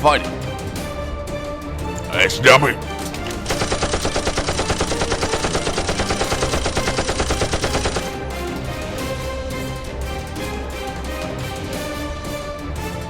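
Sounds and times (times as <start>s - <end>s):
background music: 0.0s - 13.0s
automatic gunfire: 3.4s - 8.3s.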